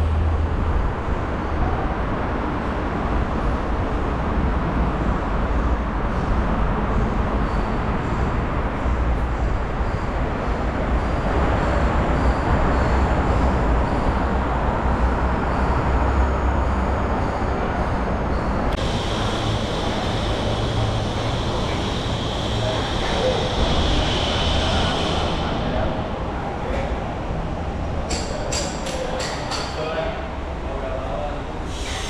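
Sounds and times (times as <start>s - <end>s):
road traffic rumble: 0.0s - 32.0s
high-pitched whine: 7.0s - 26.9s.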